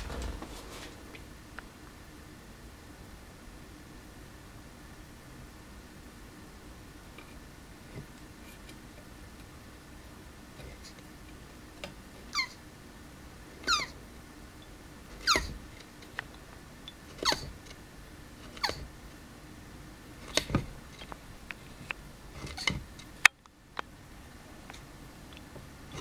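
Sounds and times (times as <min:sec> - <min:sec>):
tortoise high-pitched squeaks: 0:12.3 - 0:12.6, 0:13.6 - 0:14.0, 0:15.2 - 0:15.6, 0:17.1 - 0:17.6.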